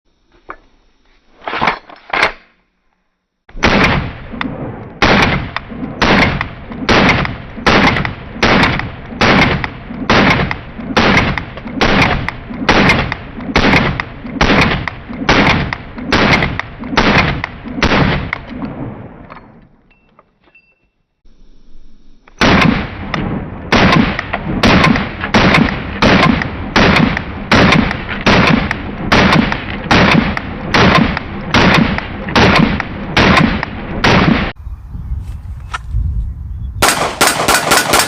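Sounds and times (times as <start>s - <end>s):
pistol shots: 3.5s - 18.4s, 22.4s - 34.5s, 36.8s - 38.0s.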